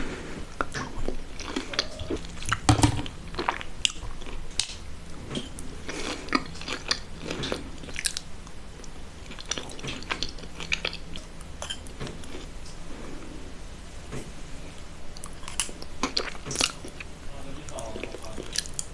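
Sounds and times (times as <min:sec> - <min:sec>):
person chewing crunchy food: 0:00.4 - 0:13.4, 0:14.6 - 0:18.9.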